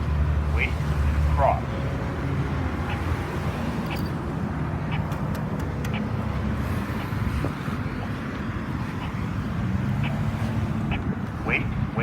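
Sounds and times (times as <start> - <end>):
road traffic passing: 0.0 - 12.0
pedestrian signal locator tone ticking: 2.8 - 4.2, 4.8 - 7.2, 8.3 - 12.0.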